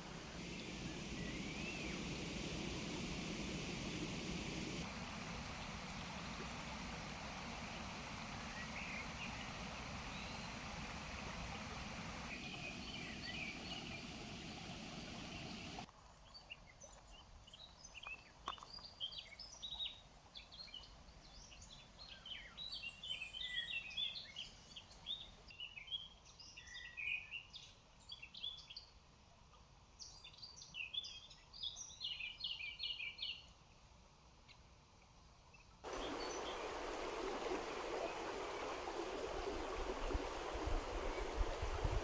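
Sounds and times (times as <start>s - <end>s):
songbirds chirping: 0.0s - 4.8s, 12.1s - 28.9s, 35.6s - 42.0s
river water rushing: 0.0s - 15.9s, 35.9s - 42.0s.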